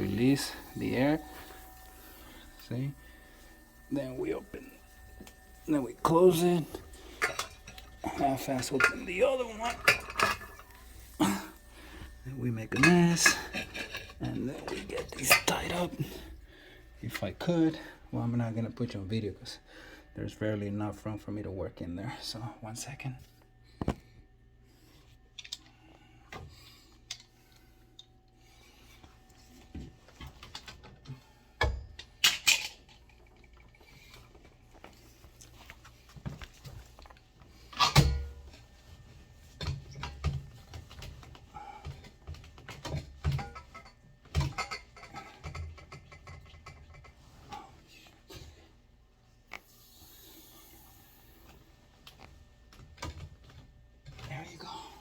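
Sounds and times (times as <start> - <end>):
hand tools knocking and clanking: 4.0 - 11.5.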